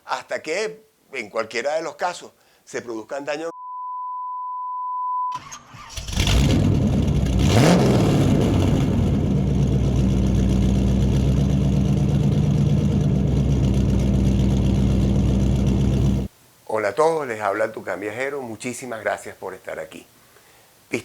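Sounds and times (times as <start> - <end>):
car engine revving and idling: 6.0 - 16.3.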